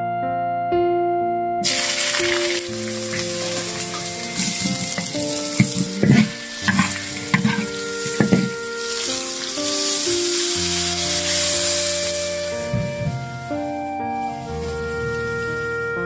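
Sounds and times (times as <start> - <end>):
background music: 0.0 - 16.0
food sizzling in hot oil: 1.6 - 16.0
stirring knocks and scrapes in pan: 1.7 - 13.6.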